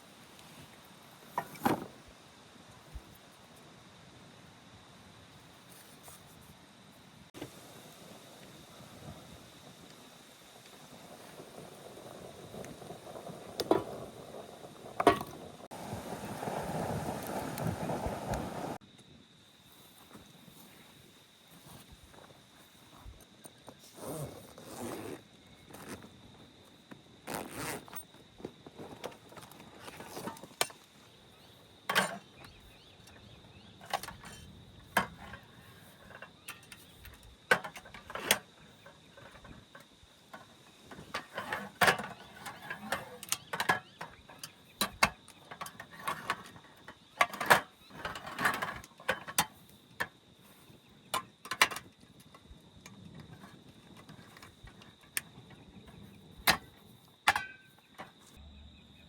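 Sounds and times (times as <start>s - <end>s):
handling clicks and knocks: 31.9s - 50.1s, 51.1s - 58.4s.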